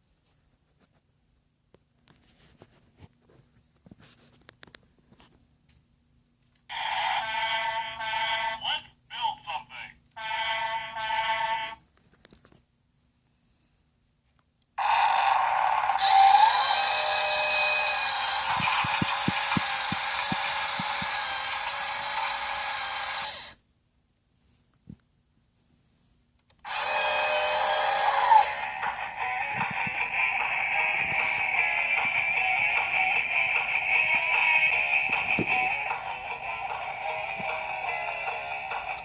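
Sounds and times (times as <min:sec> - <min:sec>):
toy power tool whirring: 0:06.7 - 0:08.8, 0:10.2 - 0:11.8, 0:14.8 - 0:23.6, 0:26.6 - 0:39.0.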